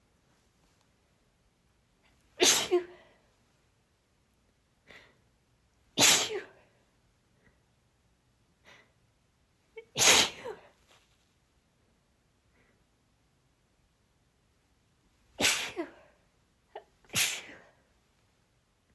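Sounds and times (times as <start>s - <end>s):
woman sneezing: 2.4s - 3.1s, 6.0s - 6.6s, 9.8s - 10.8s, 15.4s - 16.1s, 16.8s - 17.8s.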